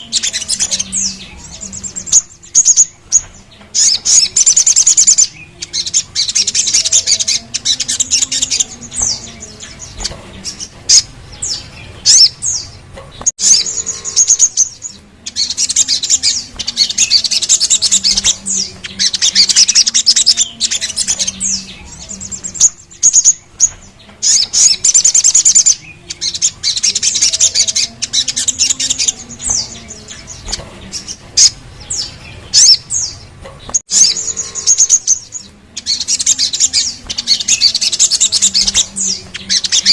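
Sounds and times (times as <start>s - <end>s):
bird singing rapid high trills: 0.0s - 39.9s.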